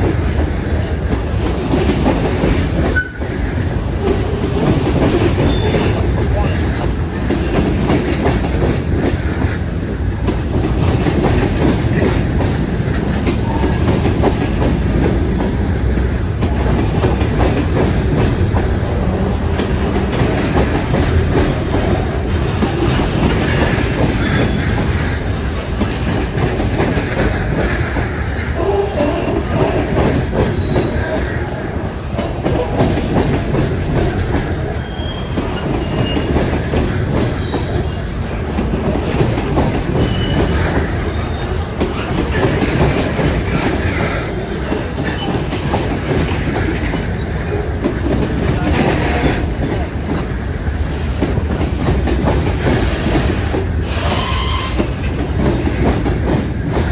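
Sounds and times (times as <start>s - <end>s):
freight train rolling past: 0.0s - 56.9s
wheels clicking over rail joints: 0.0s - 56.9s
high wheel squeals: 30.5s - 31.2s, 34.8s - 36.5s, 40.0s - 41.7s, 53.9s - 55.0s.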